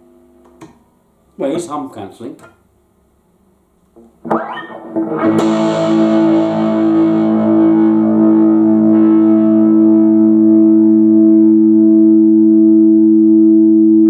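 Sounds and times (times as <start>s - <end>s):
electric guitar chord ringing: 4.0s - 14.0s.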